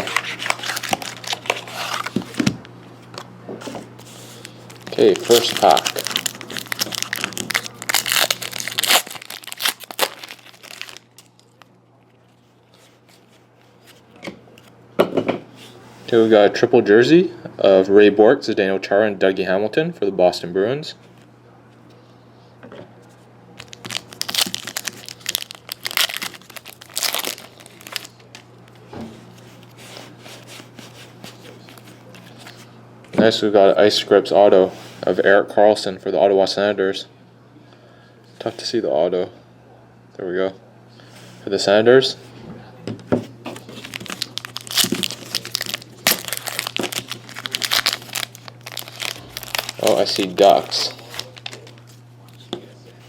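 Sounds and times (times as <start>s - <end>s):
cards crinkling and rustling: 0.0s - 2.5s, 4.0s - 11.7s, 23.6s - 28.5s, 29.4s - 32.7s, 43.5s - 52.5s.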